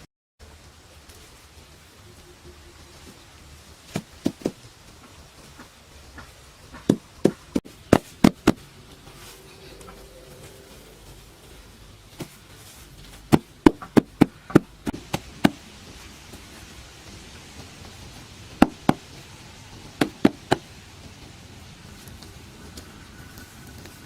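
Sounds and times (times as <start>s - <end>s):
sharp knocks: 18.6s - 19.1s.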